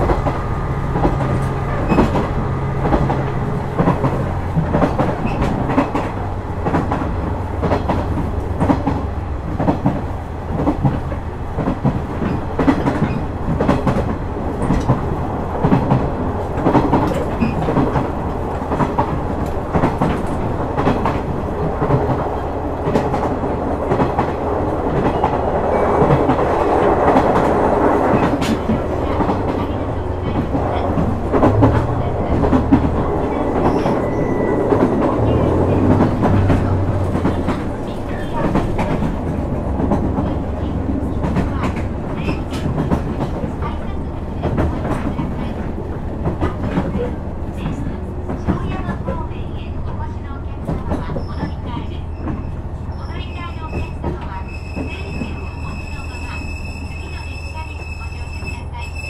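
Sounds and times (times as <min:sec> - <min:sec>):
train braking: 0:00.0 - 0:08.9, 0:24.8 - 0:45.6, 0:49.9 - 0:59.0
railcar engine drone: 0:00.0 - 0:59.0
rhythmic rail-joint clicks: 0:00.0 - 0:59.0.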